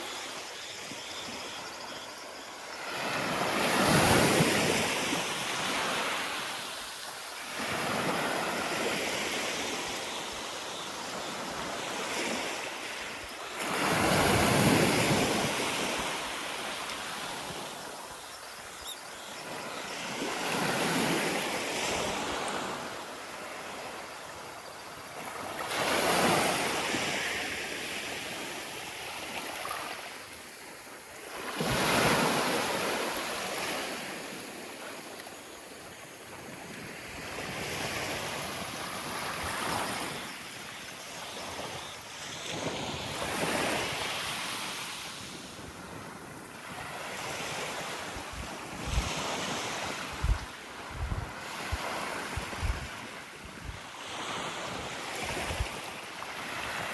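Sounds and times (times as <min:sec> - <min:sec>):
wind buffeting microphone: 0:50.1 - 0:53.0.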